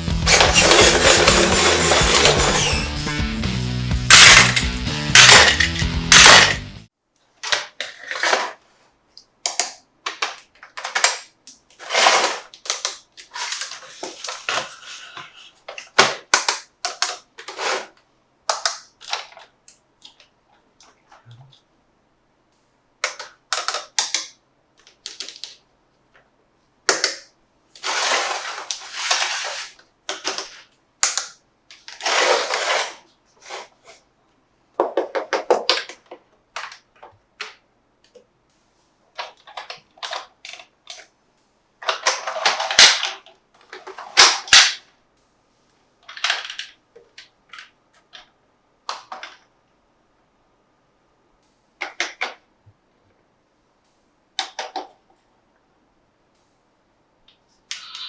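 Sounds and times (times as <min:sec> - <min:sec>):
plastic toy parts clicking: 0:09.2 - 0:21.0, 0:23.0 - 0:25.6, 0:26.9 - 0:34.0, 0:39.2 - 0:41.1, 0:46.1 - 0:48.3, 0:57.7 - 0:58.0.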